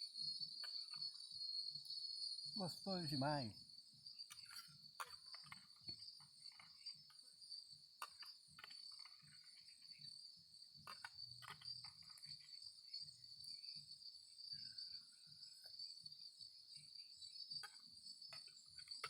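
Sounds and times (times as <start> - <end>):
cicada singing: 0.0 - 19.0.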